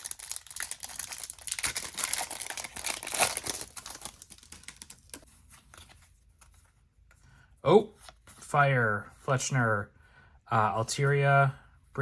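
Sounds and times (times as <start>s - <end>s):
foil wrapper crinkling and tearing: 0.0s - 5.2s.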